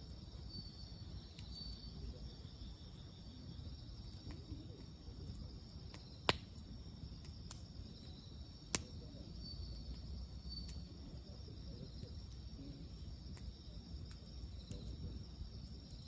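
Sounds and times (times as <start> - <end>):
campfire wood crackling: 0.0 - 16.0
high insect chorus: 0.0 - 16.0
sharp fire pops: 4.0 - 16.0.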